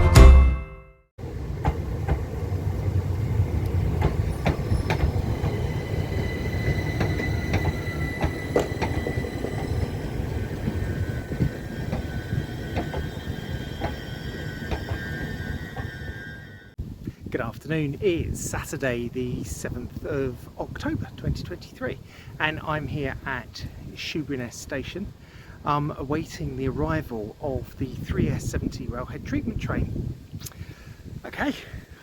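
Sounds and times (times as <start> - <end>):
wheels clicking: 1.2 - 16.0
train rumbling on rails: 1.2 - 16.8
high wheel squeal: 3.7 - 16.8.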